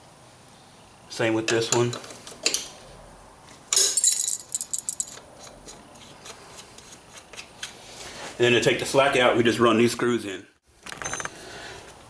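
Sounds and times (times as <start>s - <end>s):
wrench clinking on metal nut: 3.7s - 5.6s.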